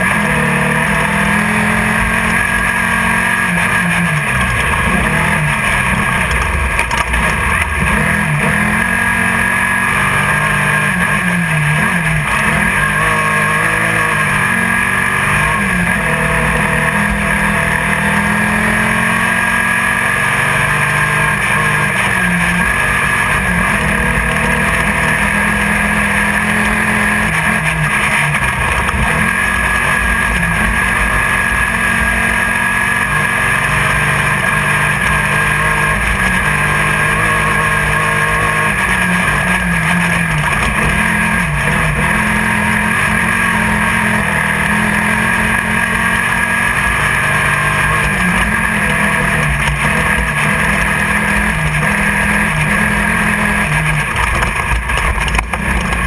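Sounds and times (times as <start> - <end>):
race car engine running hard: 0.0 - 56.0
wind and chassis noise: 0.0 - 56.0.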